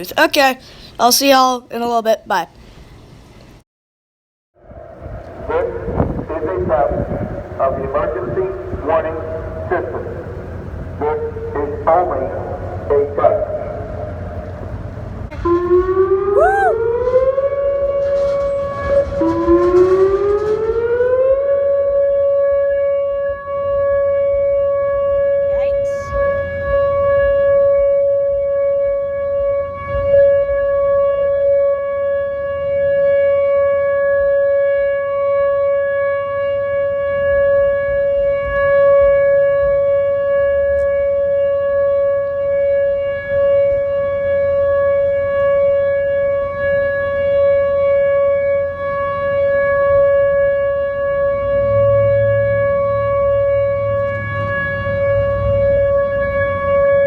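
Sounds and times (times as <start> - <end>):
tornado siren steady tone: 4.6 - 57.0
low traffic rumble: 4.7 - 16.4, 48.8 - 57.0.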